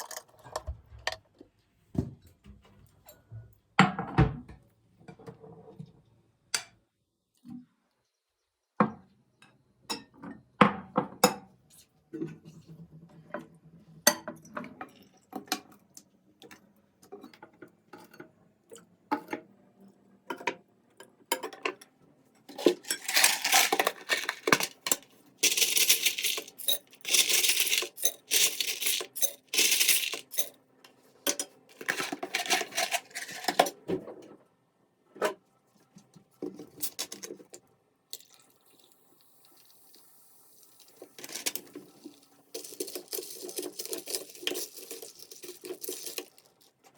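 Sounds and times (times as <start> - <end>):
metal utensils clinking on dishes: 22.5 - 30.6, 31.2 - 33.7, 41.2 - 46.5.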